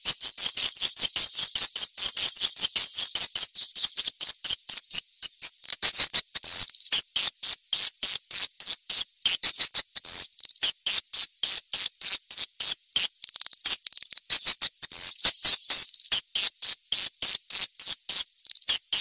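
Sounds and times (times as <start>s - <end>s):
swiftlets chirping: 15.0s - 15.9s.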